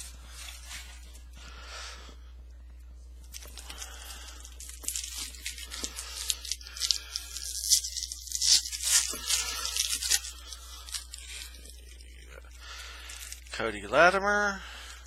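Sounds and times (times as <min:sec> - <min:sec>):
foil wrapper tearing and crinkling: 0:03.3 - 0:13.5.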